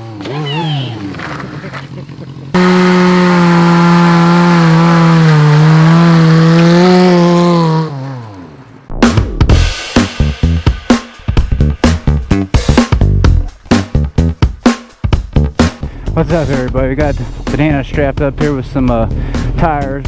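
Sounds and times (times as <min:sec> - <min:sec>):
motorcycle engine revving: 0:00.0 - 0:10.4
music with a strong beat: 0:09.0 - 0:20.0.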